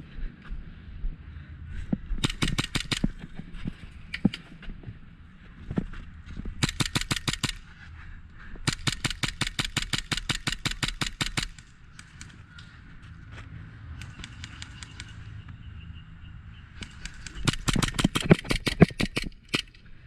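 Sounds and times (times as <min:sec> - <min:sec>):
airsoft guns firing bursts: 0:02.2 - 0:03.2, 0:06.6 - 0:07.7, 0:08.6 - 0:12.5, 0:16.8 - 0:19.7.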